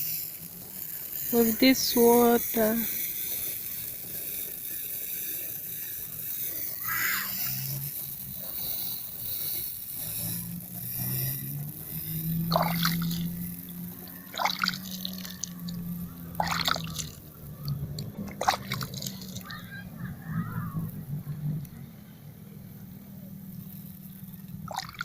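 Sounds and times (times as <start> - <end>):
low hum: 0.0 - 25.0
water splashes: 12.5 - 13.4, 14.3 - 15.8, 16.4 - 19.6, 24.6 - 25.0
water trickling on grass: 12.5 - 19.6, 24.4 - 25.0.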